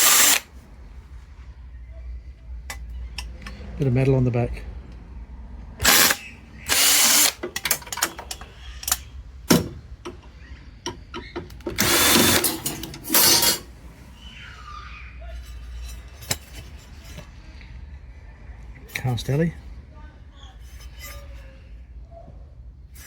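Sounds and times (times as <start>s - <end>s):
cordless drill running: 0.0s - 0.5s, 5.8s - 7.4s, 11.8s - 13.6s.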